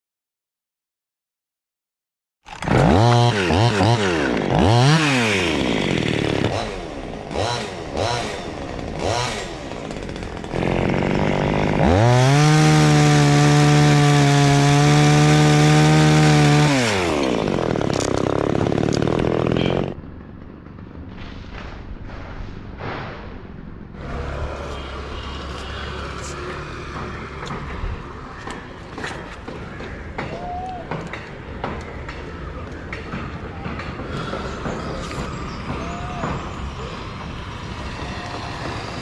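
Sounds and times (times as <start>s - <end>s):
chainsaw revving: 2.5s - 20.0s, 24.0s - 27.6s, 36.7s - 39.0s.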